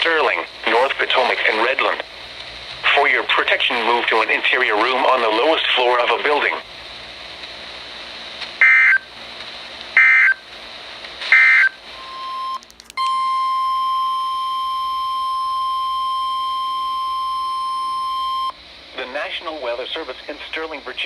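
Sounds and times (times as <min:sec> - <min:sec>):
crackle: 0:00.0 - 0:18.6
digital data tone bursts: 0:08.6 - 0:09.0, 0:10.0 - 0:10.4
long steady tone: 0:11.3 - 0:19.4.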